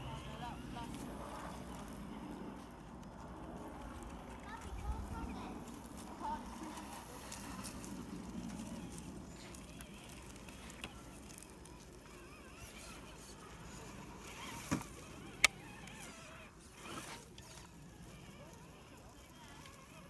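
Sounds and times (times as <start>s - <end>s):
faint motor whine: 0.0s - 20.0s.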